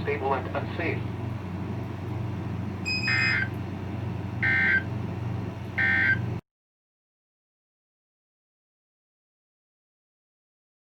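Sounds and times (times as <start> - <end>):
steady low hum: 0.0 - 6.4
buzzing digital data tones: 2.9 - 3.5.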